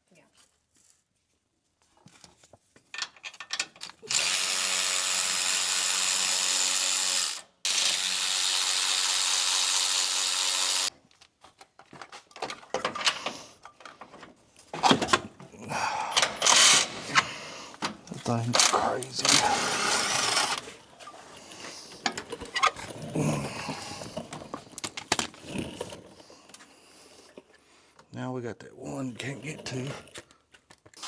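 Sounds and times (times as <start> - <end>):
cordless ratchet running: 4.1 - 10.9, 16.4 - 16.9, 18.5 - 20.6
tool and bolt clicking: 16.1 - 20.7.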